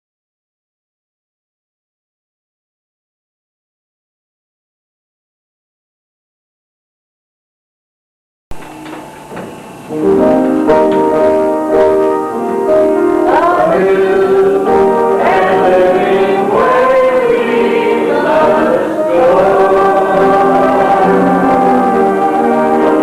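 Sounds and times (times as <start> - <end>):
held keyboard chords: 8.5 - 23.0
choir singing gospel song: 13.2 - 23.0.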